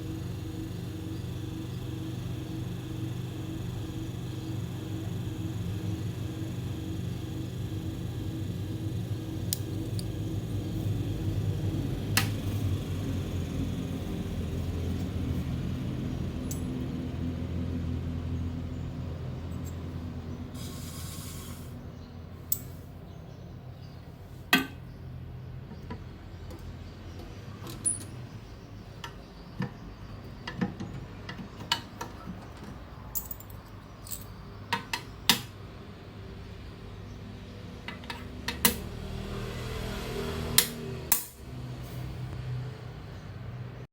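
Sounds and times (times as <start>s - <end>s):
low steady hum: 0.0s - 43.3s
metal clicks and clinks: 33.1s - 34.4s.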